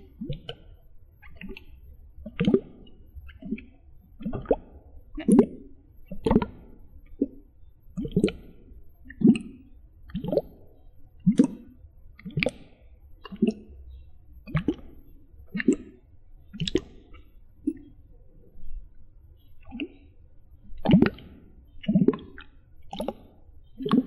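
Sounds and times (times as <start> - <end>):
water plopping: 0.2 - 7.4, 8.0 - 9.5, 10.1 - 10.6, 11.3 - 13.6, 14.4 - 15.9, 16.6 - 17.9, 20.8 - 23.2, 23.8 - 24.0.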